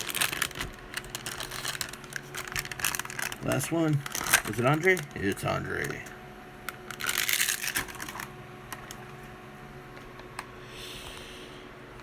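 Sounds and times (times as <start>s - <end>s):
plastic packaging clicks: 0.0s - 9.2s
plastic packaging rustling: 0.0s - 9.4s.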